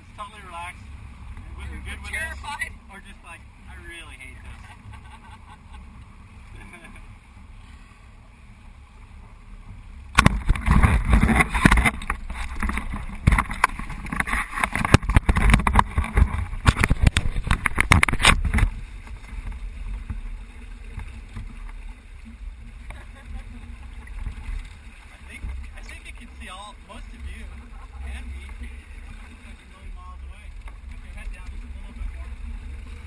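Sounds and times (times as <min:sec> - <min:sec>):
rushing splashing water: 0:10.0 - 0:33.0
microphone crackling: 0:10.1 - 0:20.2.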